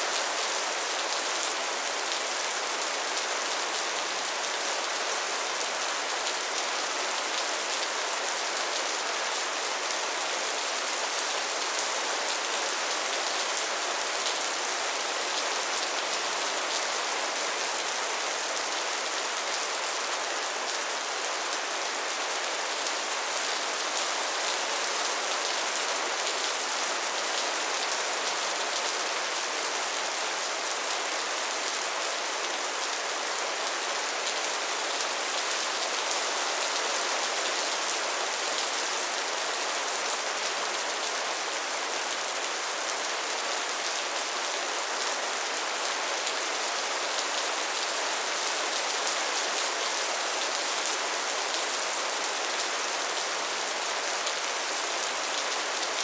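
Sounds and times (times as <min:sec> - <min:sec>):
soft rain falling: 0:00.0 - 0:56.0.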